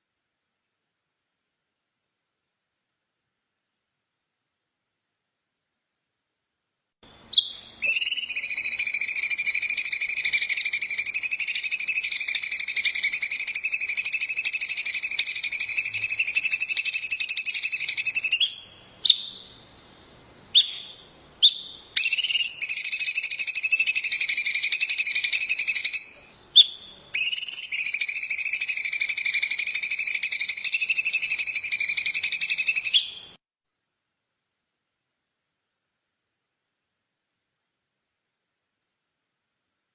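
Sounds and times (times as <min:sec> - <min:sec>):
songbird rapid trill: 0:07.3 - 0:19.6, 0:20.5 - 0:33.4.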